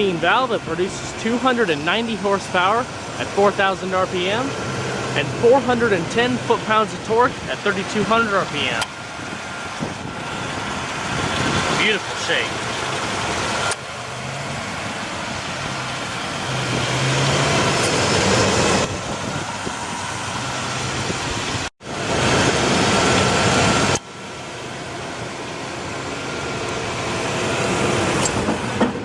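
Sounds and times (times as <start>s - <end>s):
engine idling: 0.0s - 29.0s.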